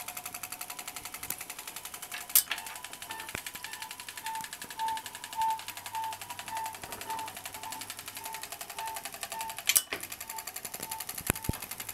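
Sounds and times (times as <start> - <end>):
jukebox mechanism chattering: 0.0 - 11.9
pulsing tone: 2.5 - 11.6
sharp clack: 9.7 - 10.1.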